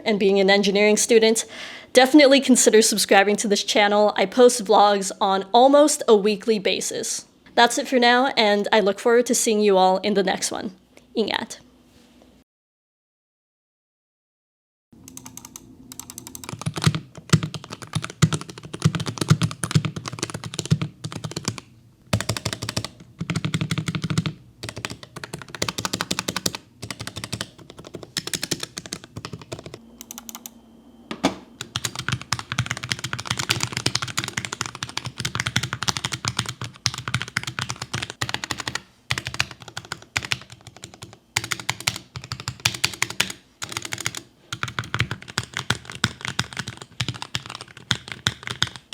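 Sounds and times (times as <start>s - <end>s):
fast typing on mechanical keyboard: 15.1s - 30.5s, 31.6s - 48.9s.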